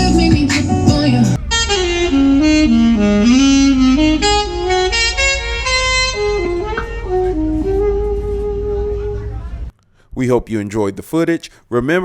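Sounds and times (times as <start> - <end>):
saxophone melody: 0.0 - 9.7
steady bass: 0.0 - 9.7.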